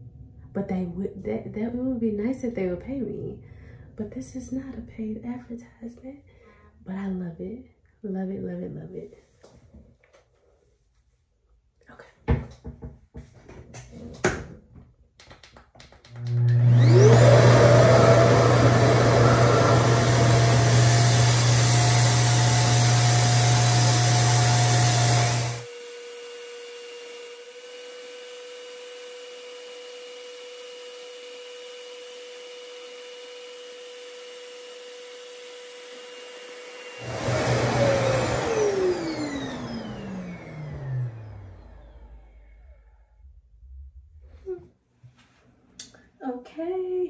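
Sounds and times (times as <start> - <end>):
hair dryer whirring: 16.0 - 42.6.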